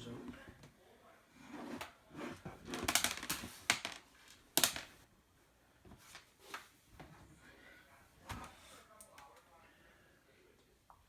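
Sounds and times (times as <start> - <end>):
plastic laptop clicks: 4.6 - 4.9.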